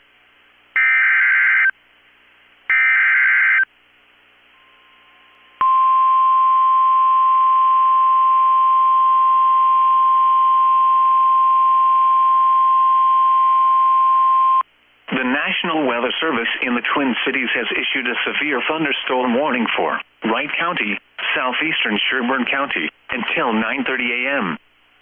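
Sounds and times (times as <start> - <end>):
steady warning alarm tone: 0.8 - 1.7, 2.7 - 3.7.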